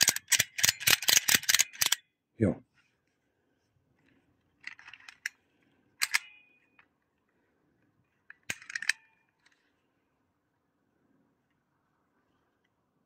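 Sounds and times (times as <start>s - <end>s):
ratchet strap metal clicks and clanks: 0.0s - 2.1s, 6.0s - 6.9s, 8.3s - 9.6s.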